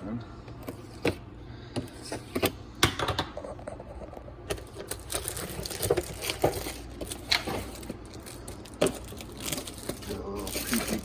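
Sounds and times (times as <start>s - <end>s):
plastic wrap crinkling: 4.0s - 11.0s.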